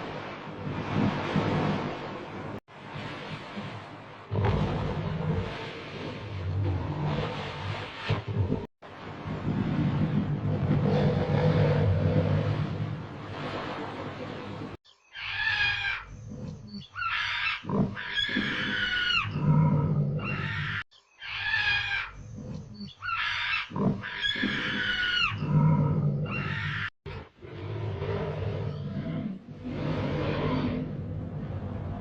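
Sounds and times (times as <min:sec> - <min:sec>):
high squealing animal cries: 0:15.1 - 0:16.1, 0:17.0 - 0:19.4, 0:20.2 - 0:22.2, 0:23.0 - 0:25.4.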